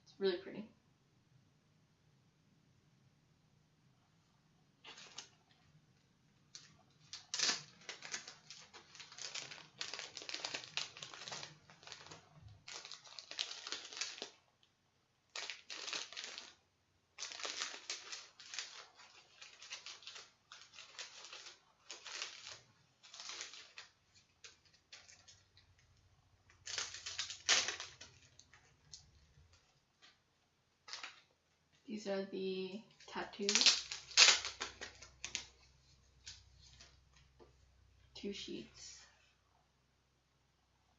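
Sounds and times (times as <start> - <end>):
plastic packaging crinkling: 4.8 - 5.6, 6.5 - 14.6, 15.3 - 30.2, 30.8 - 31.3, 32.9 - 37.0.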